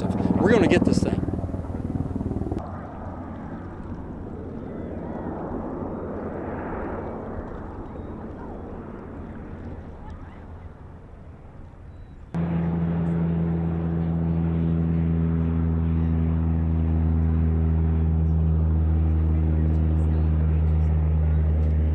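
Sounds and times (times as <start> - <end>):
low engine hum: 0.0 - 21.9.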